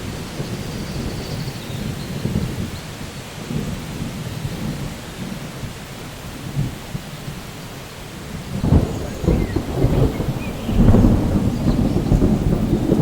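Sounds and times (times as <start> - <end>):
steady rain: 0.0 - 13.0
rolling thunder: 8.1 - 13.0.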